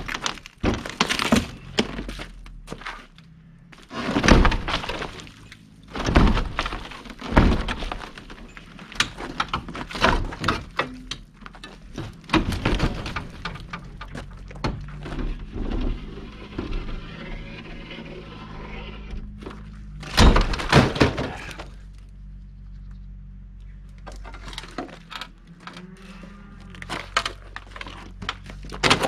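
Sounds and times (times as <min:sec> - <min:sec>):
debris clattering down: 0:00.0 - 0:03.2, 0:03.8 - 0:17.1, 0:19.4 - 0:22.1, 0:26.7 - 0:29.0
heavy thuds and cracking: 0:00.0 - 0:17.9, 0:19.1 - 0:22.1, 0:26.7 - 0:29.0
big crashes: 0:03.8 - 0:10.8, 0:20.0 - 0:21.8.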